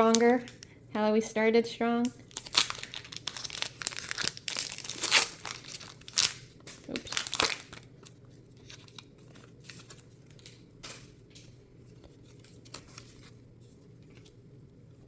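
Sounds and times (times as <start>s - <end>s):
foil wrapper rustling: 2.2s - 11.1s.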